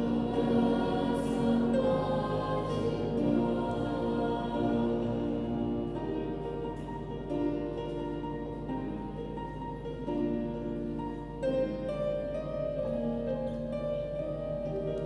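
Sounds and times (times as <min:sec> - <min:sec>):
choir singing with accompaniment: 0:00.0 - 0:07.9.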